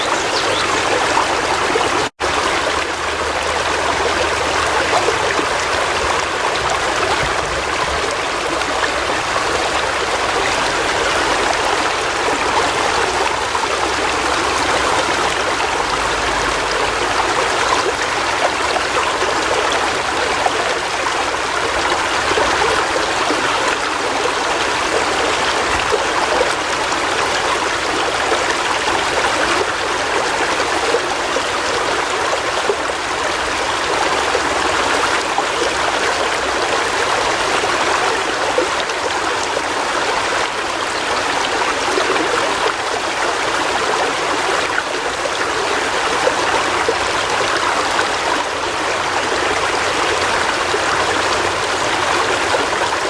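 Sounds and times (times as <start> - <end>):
river water flowing over rocks: 0.0 - 53.0.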